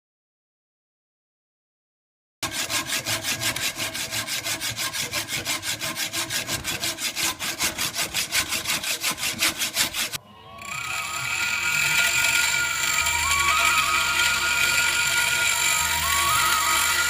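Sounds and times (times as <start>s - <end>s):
hand saw strokes: 2.4s - 17.0s.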